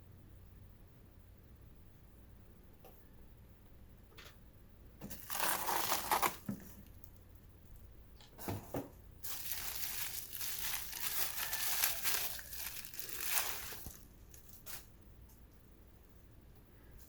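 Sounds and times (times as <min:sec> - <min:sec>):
packaging crinkling: 0:05.0 - 0:07.2, 0:09.2 - 0:14.9.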